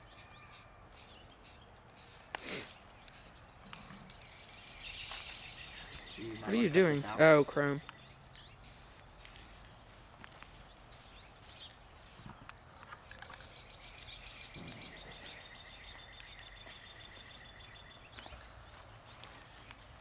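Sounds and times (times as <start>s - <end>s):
faint outdoor ambience: 0.0s - 20.0s
short high hissing bursts: 0.1s - 7.5s, 8.6s - 9.6s, 10.3s - 12.3s, 13.4s - 14.6s, 16.6s - 17.6s
high chirping trill: 3.2s - 8.0s, 13.3s - 18.0s.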